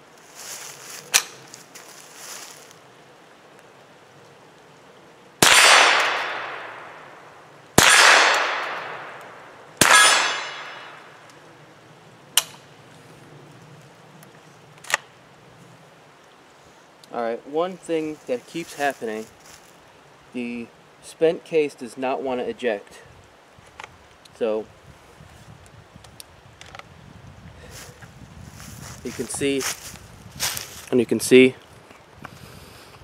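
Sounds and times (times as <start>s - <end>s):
rifle shots: 5.4s - 7.1s, 7.8s - 11.2s.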